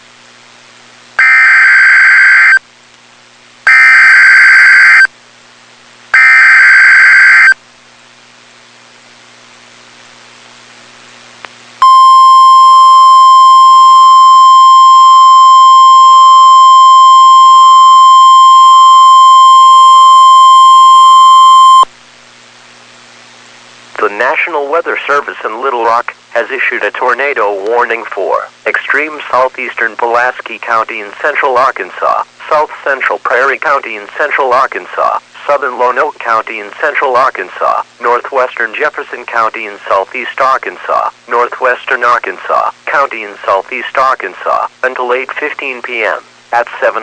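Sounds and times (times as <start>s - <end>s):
screeching digital data bursts: 3.7s - 5.1s, 6.2s - 7.6s
steady high alert tone: 6.2s - 7.6s.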